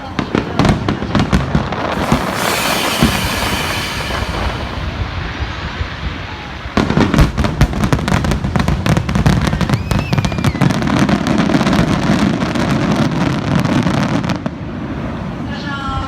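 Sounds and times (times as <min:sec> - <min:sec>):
fireworks crackling and banging: 0:00.2 - 0:05.9
steady rumble: 0:01.9 - 0:05.5.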